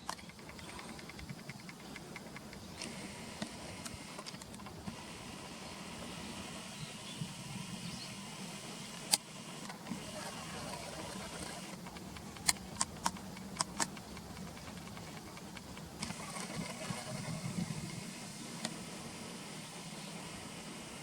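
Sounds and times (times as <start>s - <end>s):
outdoor background hum: 0.0s - 21.0s.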